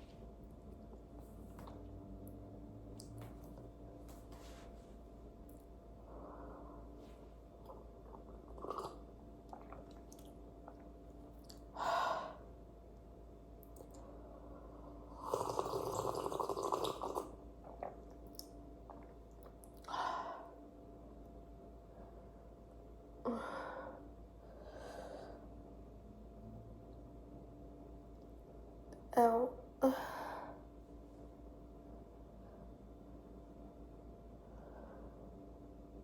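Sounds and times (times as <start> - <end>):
woman breathing: 6.0 - 7.3, 11.8 - 12.5, 23.3 - 25.5, 29.8 - 30.7, 34.4 - 35.4.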